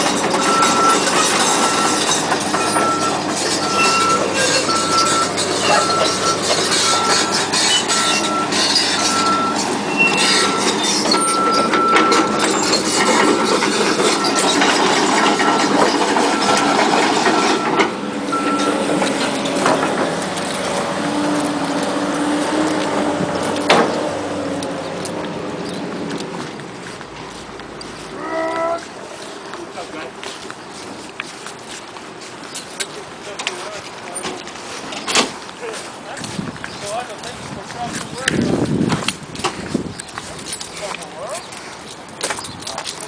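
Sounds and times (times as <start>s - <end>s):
backup alarm beeping: 0.0s - 19.6s
construction machinery engine running: 0.0s - 43.0s.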